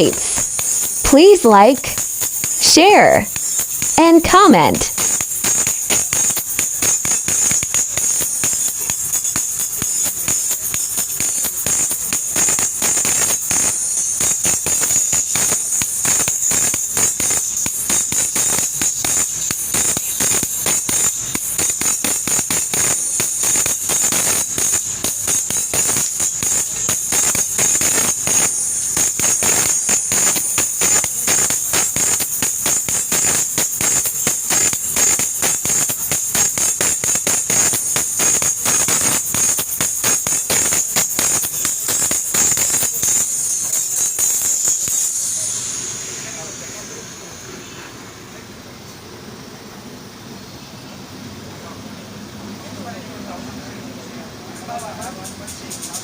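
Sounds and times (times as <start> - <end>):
loud music with fast beat: 1.5 - 1.9.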